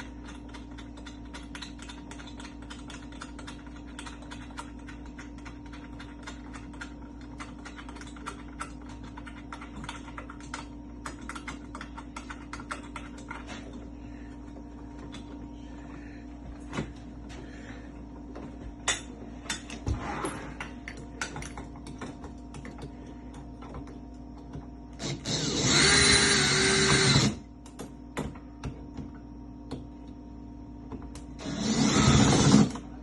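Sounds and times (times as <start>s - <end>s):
small power tool running: 25.0s - 27.4s, 31.4s - 32.8s.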